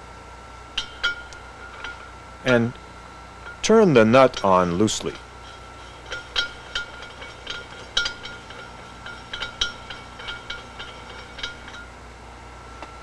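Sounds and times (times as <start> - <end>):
metallic clinks and ticks: 3.4 - 11.9.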